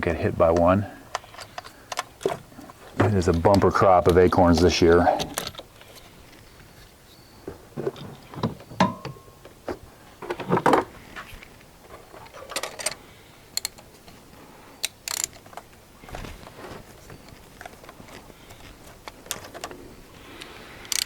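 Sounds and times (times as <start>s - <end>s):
ratchet and socket clicking: 14.8s - 15.4s
metallic clicks of hand tools: 14.8s - 15.5s, 20.4s - 21.0s.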